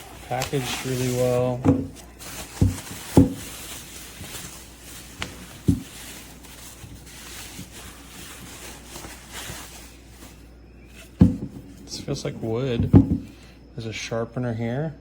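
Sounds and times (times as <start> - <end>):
packaging rustling: 0.0 - 13.4.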